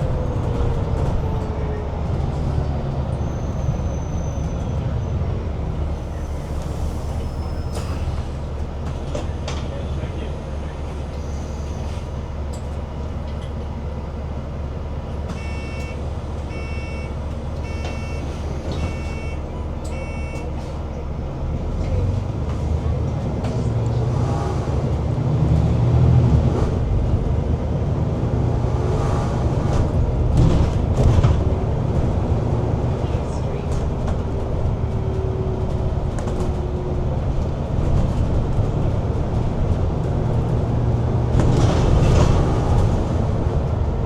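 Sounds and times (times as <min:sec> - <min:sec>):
bus engine and road rumble: 0:00.0 - 0:44.0
short electronic beeps: 0:15.4 - 0:20.5.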